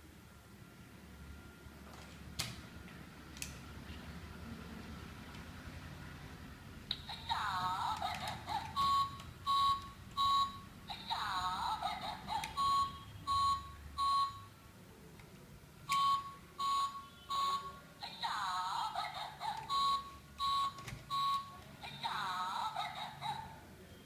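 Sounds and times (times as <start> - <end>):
short electronic beeps: 8.8 - 10.8, 12.5 - 14.6, 15.9 - 17.8, 19.7 - 21.6.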